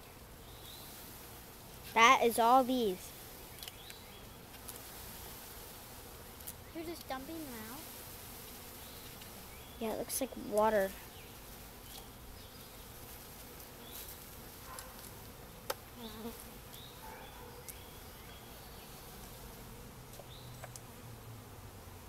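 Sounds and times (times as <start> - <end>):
honeybees buzzing: 0.0 - 22.0.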